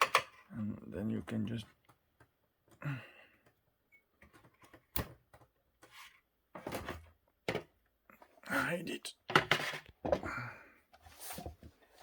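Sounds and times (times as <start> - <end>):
plastic parts clicking and knocking: 0.0 - 0.5, 1.7 - 2.8, 3.4 - 6.0, 6.6 - 8.3, 9.2 - 10.3.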